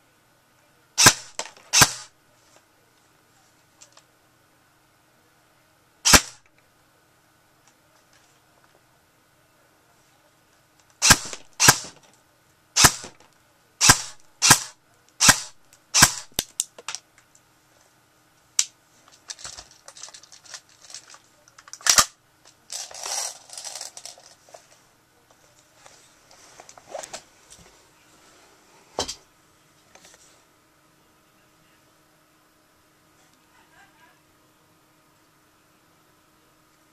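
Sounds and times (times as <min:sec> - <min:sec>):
airsoft gun shots: 0:01.0 - 0:02.1, 0:06.0 - 0:06.5, 0:11.0 - 0:12.0, 0:12.8 - 0:13.2, 0:13.8 - 0:16.5
soft handling noises: 0:02.3 - 0:04.2, 0:07.6 - 0:09.0, 0:16.7 - 0:30.6.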